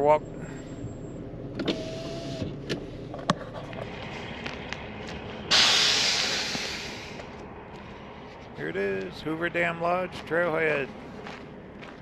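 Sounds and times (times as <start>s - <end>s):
air brake hiss: 5.5s - 7.2s.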